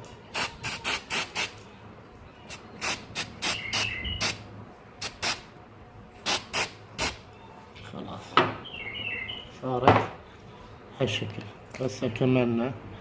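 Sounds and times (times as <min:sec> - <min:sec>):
aerosol spray hissing bursts: 0:00.4 - 0:01.6, 0:02.5 - 0:04.4, 0:05.0 - 0:05.4, 0:06.2 - 0:07.2
faint bird chirp: 0:03.4 - 0:04.4.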